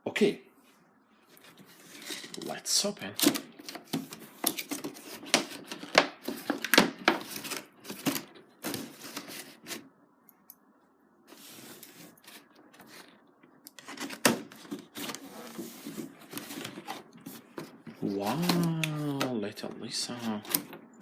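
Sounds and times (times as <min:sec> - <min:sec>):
packaging rustling: 0:01.3 - 0:09.9, 0:11.3 - 0:19.3.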